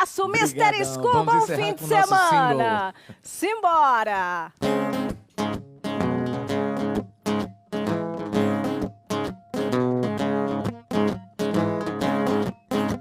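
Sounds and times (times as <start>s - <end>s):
guitar strumming chords: 4.6s - 13.0s.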